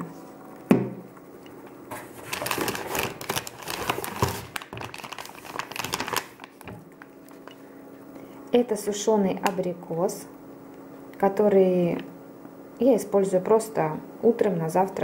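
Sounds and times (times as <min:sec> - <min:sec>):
plastic snack pouch crinkling: 0:02.2 - 0:07.1.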